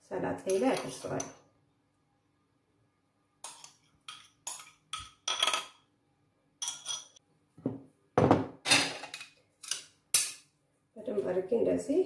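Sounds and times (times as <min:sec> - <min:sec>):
cutlery scraping against a bowl: 0:00.5 - 0:01.3, 0:03.4 - 0:05.8, 0:06.6 - 0:07.2.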